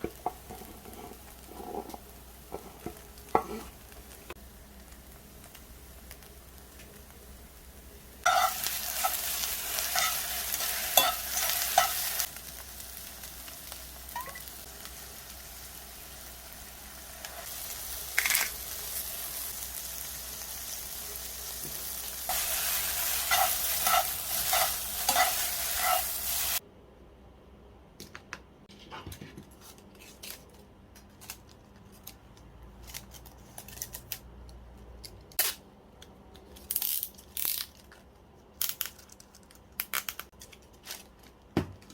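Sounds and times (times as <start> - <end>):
noodles sizzling in pan: 0.0 - 26.6
spatula scraping pan: 0.2 - 3.8, 8.3 - 9.2, 22.3 - 26.6.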